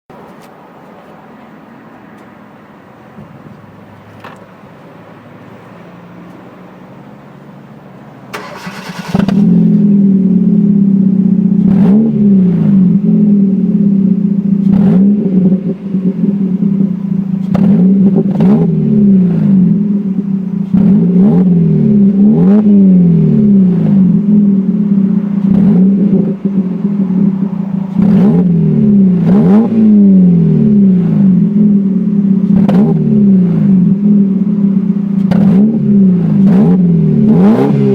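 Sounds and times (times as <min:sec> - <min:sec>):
car engine revving: 0:08.3 - 0:37.9
exhaust cracks: 0:08.3 - 0:37.9.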